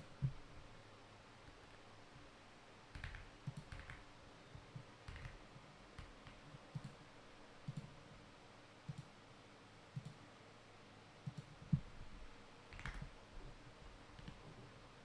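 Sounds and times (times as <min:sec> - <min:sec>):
faint clicks: 0:08.9 - 0:09.1.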